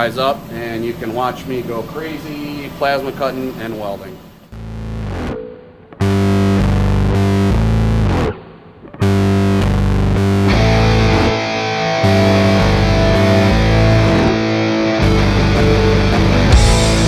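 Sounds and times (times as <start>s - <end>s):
rock music with electric guitar: 4.9s - 17.0s.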